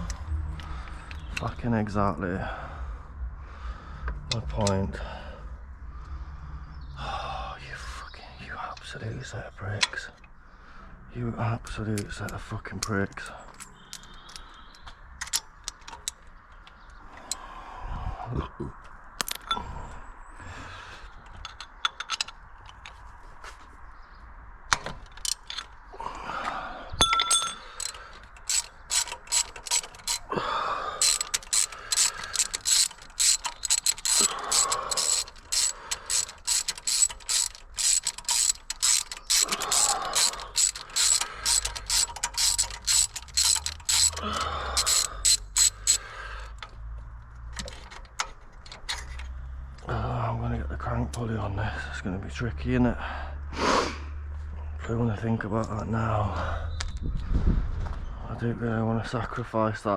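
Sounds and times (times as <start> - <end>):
ratchet wrench clicking: 27.0 - 30.4, 31.0 - 46.8.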